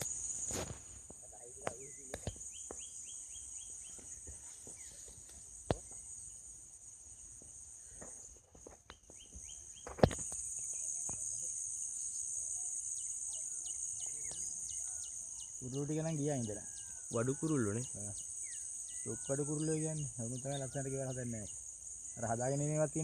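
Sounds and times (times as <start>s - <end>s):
insects droning: 0.0s - 23.0s
small birds chirping: 0.0s - 23.0s.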